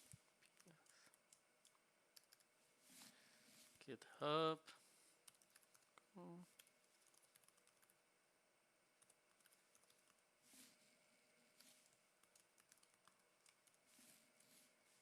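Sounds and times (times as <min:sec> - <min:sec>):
faint keyboard typing: 0:00.0 - 0:03.1, 0:05.2 - 0:08.0, 0:08.9 - 0:14.8.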